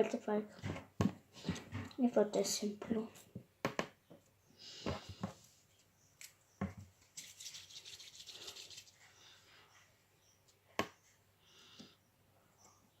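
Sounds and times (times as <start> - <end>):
scratchy rubbing: 7.2 - 9.0.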